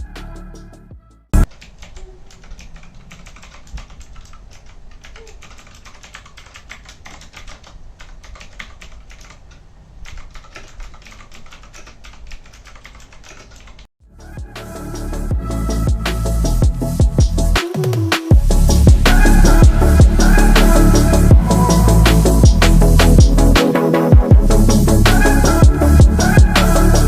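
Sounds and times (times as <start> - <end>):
mechanical keyboard typing: 1.4 - 13.9.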